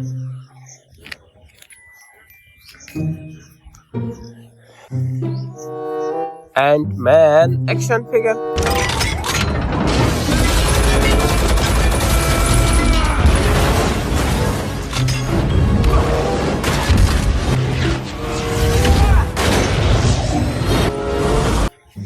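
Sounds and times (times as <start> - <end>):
dramatic background music: 2.9 - 6.6, 7.4 - 21.7
booms and rapid bangs: 8.6 - 21.7.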